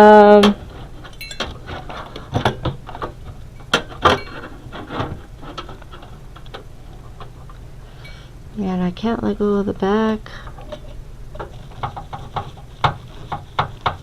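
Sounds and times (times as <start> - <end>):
metal parts and screws clicking: 1.0 - 2.1.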